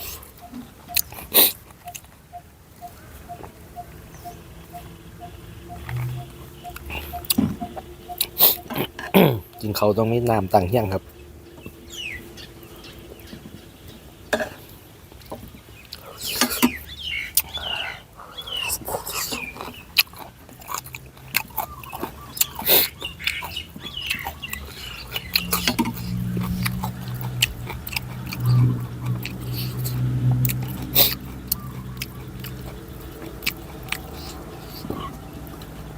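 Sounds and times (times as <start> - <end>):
man chewing noodles: 0.0 - 10.7, 18.4 - 35.9
steady low hum: 0.0 - 15.2, 24.4 - 35.9
birds chirping: 0.0 - 35.9.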